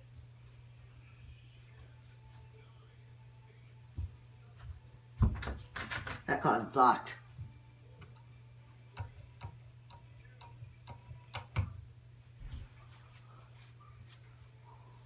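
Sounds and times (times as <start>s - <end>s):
ceiling fan humming: 0.0s - 15.0s.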